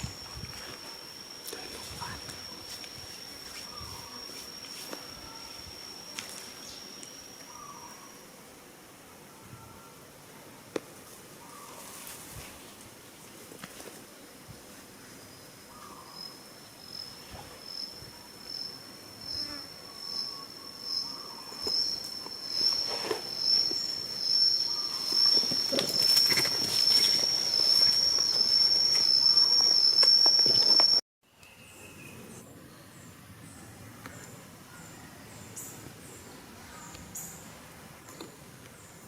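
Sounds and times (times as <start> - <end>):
cicada buzzing: 0.0 - 8.9, 16.3 - 31.0.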